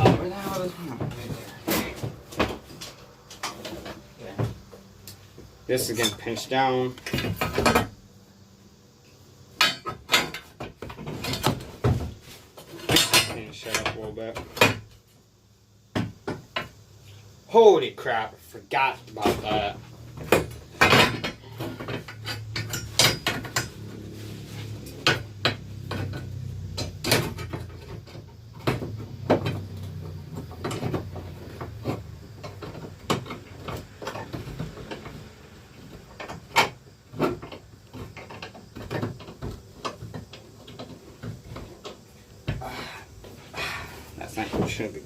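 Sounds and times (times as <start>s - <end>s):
metal tools clanking: 5.7s - 7.9s, 12.7s - 14.8s, 19.1s - 28.3s.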